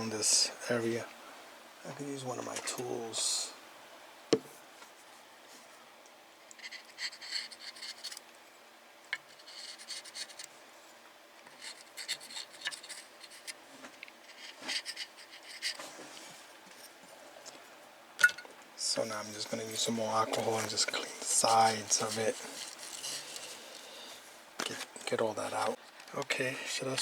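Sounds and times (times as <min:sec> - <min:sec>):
hand tool scraping: 0:06.6 - 0:08.2, 0:09.2 - 0:10.5, 0:11.5 - 0:16.4, 0:19.0 - 0:24.2.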